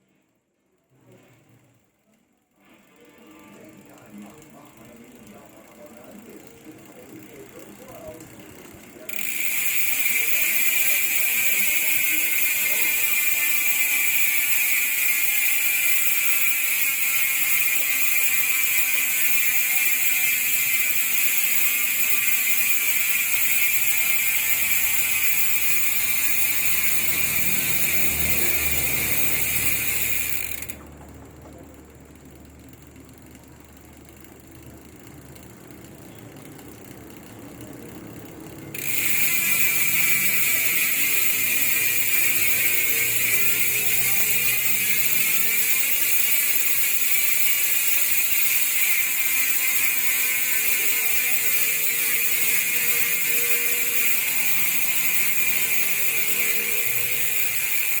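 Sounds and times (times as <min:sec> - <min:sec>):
bicycle hub freewheel clicking buzz: 0:01.8 - 0:30.9, 0:31.8 - 0:58.0.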